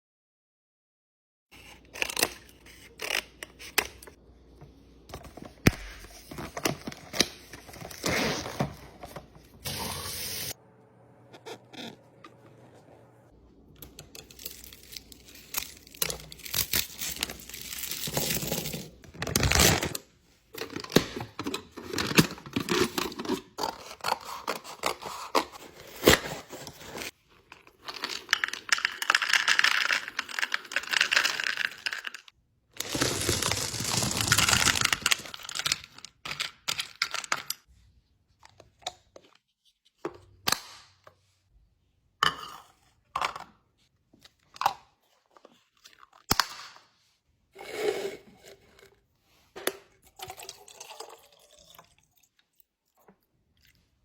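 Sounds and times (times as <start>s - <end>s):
packaging tearing and crinkling: 14.3s - 20.0s, 32.8s - 36.1s.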